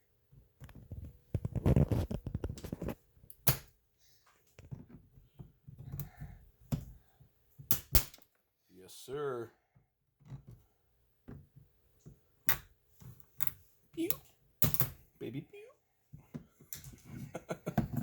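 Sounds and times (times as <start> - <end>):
plastic scraping: 0.6 - 3.0.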